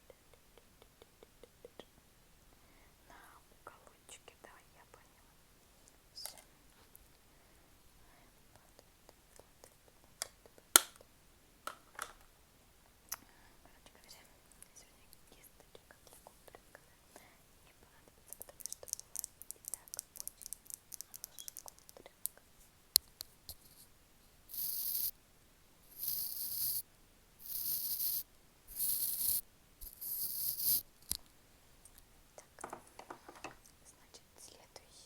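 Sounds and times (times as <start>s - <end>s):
light tapping and clicking: 18.3s - 22.4s.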